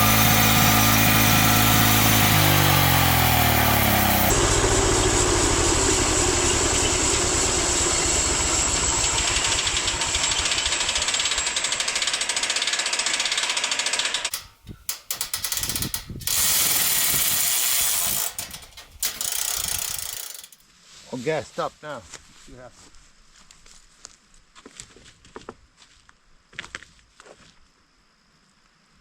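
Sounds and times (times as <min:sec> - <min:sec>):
sawmill engine clattering: 0:00.0 - 0:20.6.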